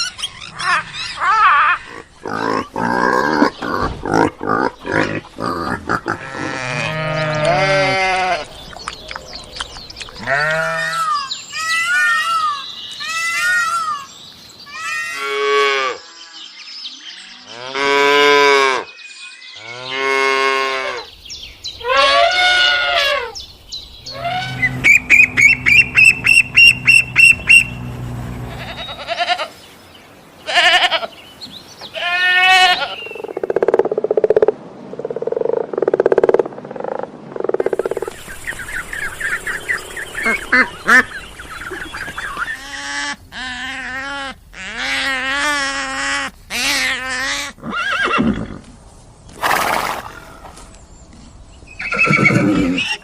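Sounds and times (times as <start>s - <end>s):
farm animals calling: 0.0s - 14.1s, 19.6s - 29.7s, 37.5s - 48.5s, 51.8s - 53.0s.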